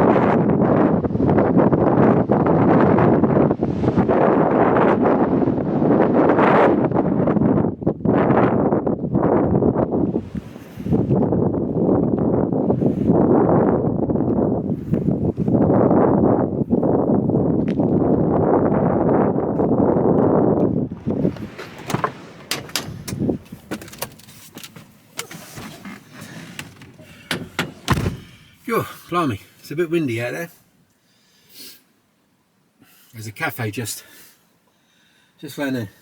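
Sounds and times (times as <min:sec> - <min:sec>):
wind buffeting microphone: 0:00.0 - 0:28.8
sharp clicks and knocks: 0:20.6 - 0:28.4.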